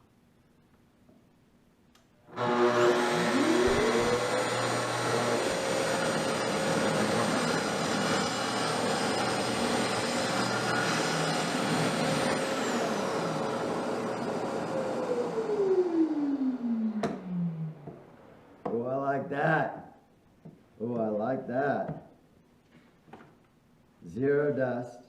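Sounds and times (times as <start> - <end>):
track saw whining: 2.3 - 17.9
dust extractor whine: 2.3 - 18.1.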